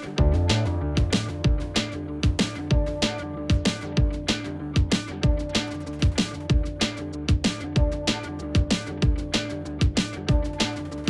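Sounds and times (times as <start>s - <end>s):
sustained pitched notes: 0.0s - 2.9s
drum hits: 0.0s - 10.6s.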